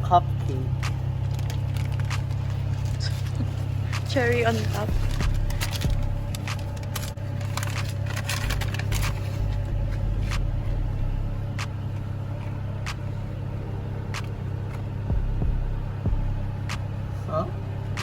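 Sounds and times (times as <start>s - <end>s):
car engine idling: 0.0s - 18.0s.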